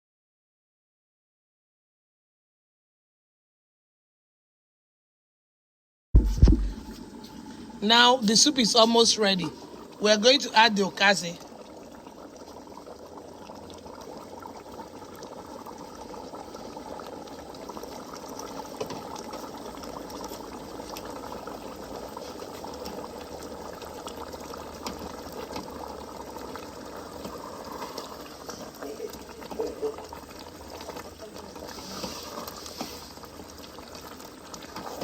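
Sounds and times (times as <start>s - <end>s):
soup boiling and bubbling: 6.2s - 35.0s.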